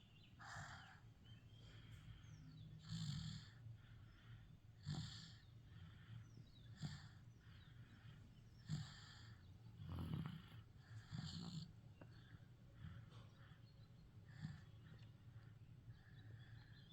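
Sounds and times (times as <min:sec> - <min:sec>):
faint snoring: 0:02.2 - 0:15.1.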